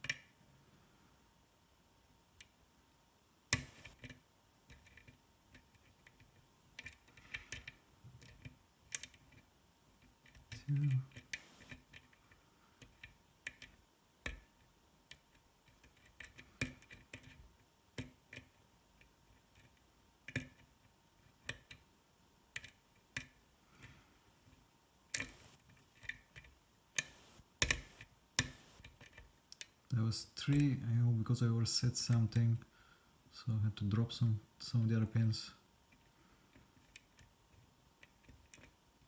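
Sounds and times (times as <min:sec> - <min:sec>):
lock pick clicking pins: 0:03.5 - 0:09.4, 0:22.5 - 0:23.4.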